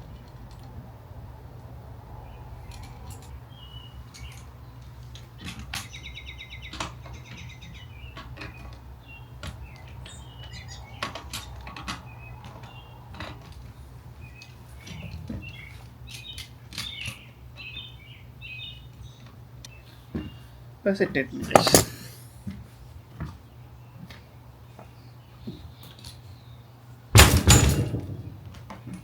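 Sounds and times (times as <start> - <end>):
birds chirping: 2.2 - 5.0, 5.6 - 13.2, 14.1 - 22.3.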